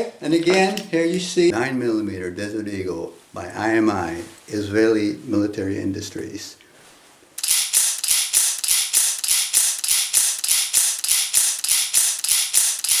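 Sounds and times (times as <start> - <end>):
rapid mechanical clicking: 7.4 - 13.0.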